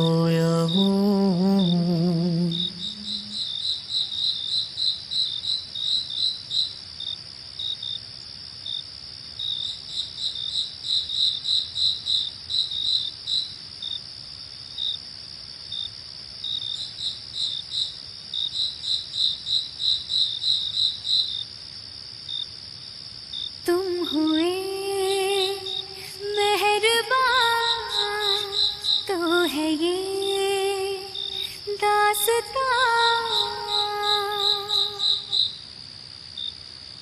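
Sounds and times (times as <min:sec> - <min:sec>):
high-pitched insect drone: 0:00.0 - 0:06.8, 0:23.4 - 0:37.0
crickets chirping: 0:00.0 - 0:37.0.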